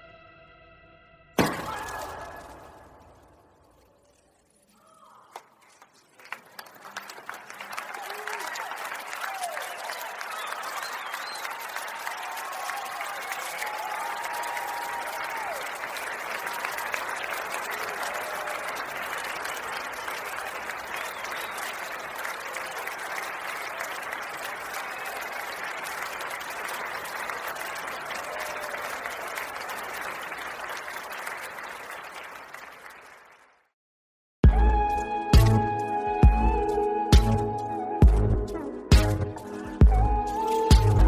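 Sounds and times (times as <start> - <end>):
crowd applauding: 4.7 - 33.7, 38.9 - 41.0.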